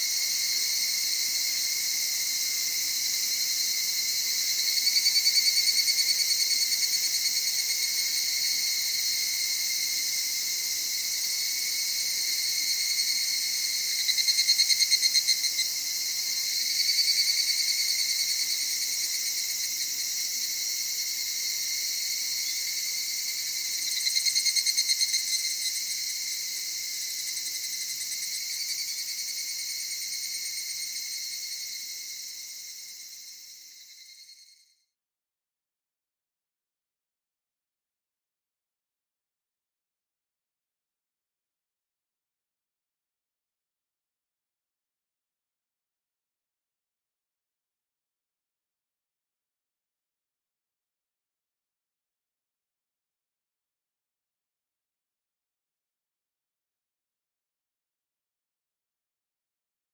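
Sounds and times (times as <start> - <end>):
cicada trill: 0.0 - 34.7
high insect drone: 0.0 - 34.7.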